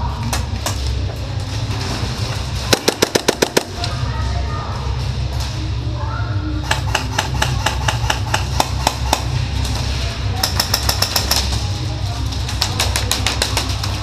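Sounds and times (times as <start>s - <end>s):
airsoft guns firing: 2.7s - 3.9s.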